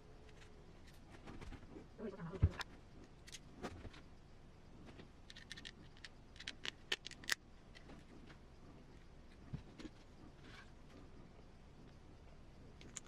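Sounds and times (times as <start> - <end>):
light clicks of small parts: 4.9 - 8.1.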